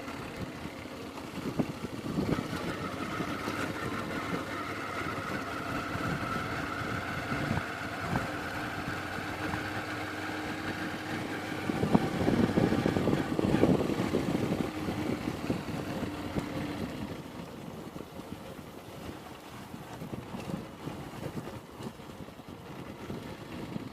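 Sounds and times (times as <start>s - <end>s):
motorcycle engine running: 0.0s - 18.3s.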